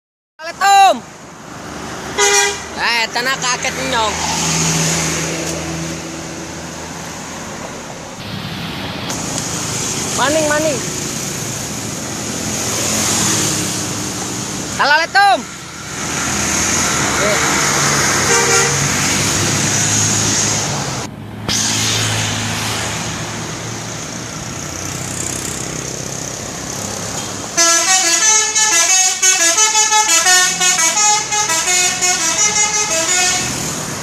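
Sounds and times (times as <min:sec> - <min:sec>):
road traffic: 0:00.4 - 0:34.0
musical bus horn melody: 0:02.2 - 0:02.8, 0:18.2 - 0:19.1, 0:27.5 - 0:33.9
bus engine running: 0:05.1 - 0:14.8, 0:15.5 - 0:34.0
short horn toot: 0:18.3 - 0:18.8.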